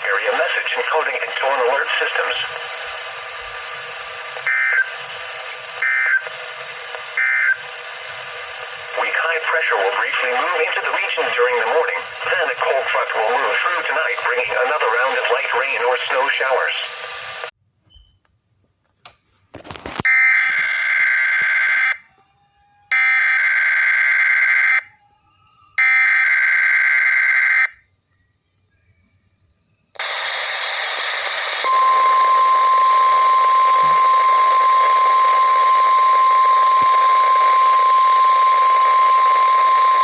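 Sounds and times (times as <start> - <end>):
data burst tones: 30.0 - 40.0.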